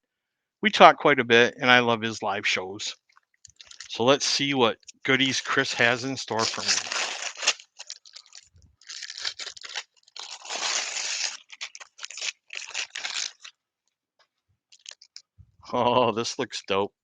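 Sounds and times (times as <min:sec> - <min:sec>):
wrapping paper tearing and crinkling: 0:03.6 - 0:04.0, 0:05.2 - 0:13.6.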